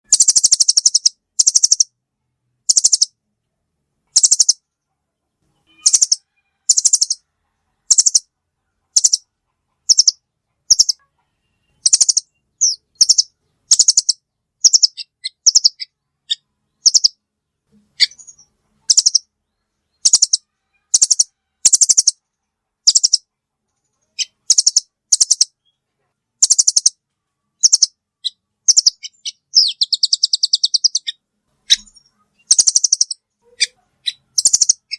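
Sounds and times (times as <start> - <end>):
nuthatch chattering trills: 0.1 - 1.9, 2.7 - 3.1, 4.1 - 4.6, 5.8 - 7.2, 7.9 - 8.2, 8.9 - 11.0, 11.8 - 17.2, 18.0 - 19.3, 20.0 - 22.2, 22.8 - 23.3, 24.1 - 25.6, 26.4 - 27.0, 27.6 - 34.9.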